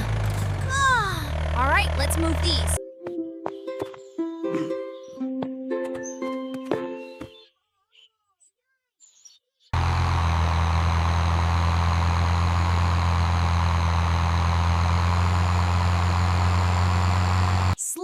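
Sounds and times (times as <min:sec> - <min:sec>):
heavy vehicle engine idling: 0:00.0 - 0:02.8, 0:09.8 - 0:17.8.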